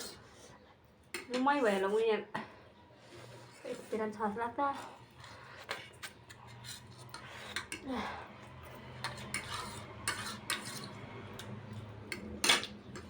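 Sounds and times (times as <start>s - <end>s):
utensils clinking against a bowl: 4.8s - 13.0s.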